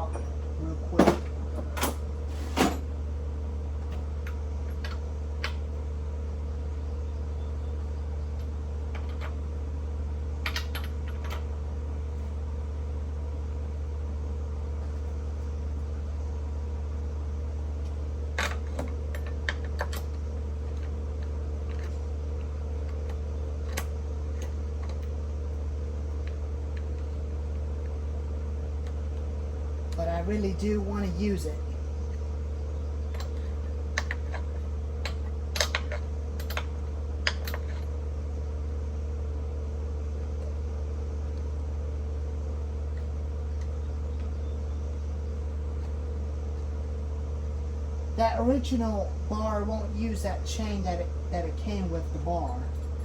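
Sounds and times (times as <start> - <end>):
exhaust fan humming: 0.0 - 53.0.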